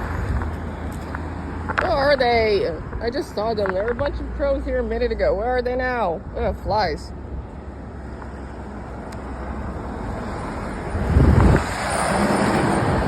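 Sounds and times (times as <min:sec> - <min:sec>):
wind buffeting microphone: 0:00.0 - 0:04.4, 0:06.2 - 0:07.5, 0:10.0 - 0:13.0
street traffic: 0:00.0 - 0:13.0.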